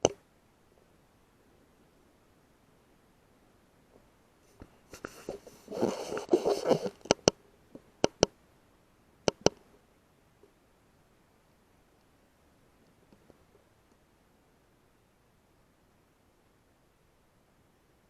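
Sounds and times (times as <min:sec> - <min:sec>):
rustling handling noise: 0:04.4 - 0:07.2
sharp clicks: 0:06.2 - 0:07.4, 0:08.0 - 0:08.4, 0:09.2 - 0:09.6.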